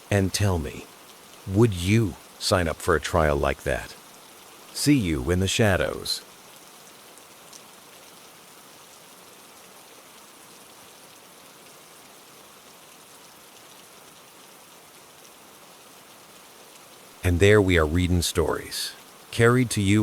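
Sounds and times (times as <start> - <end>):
raindrops ticking: 0.0 - 9.1
rain hissing: 0.0 - 20.0.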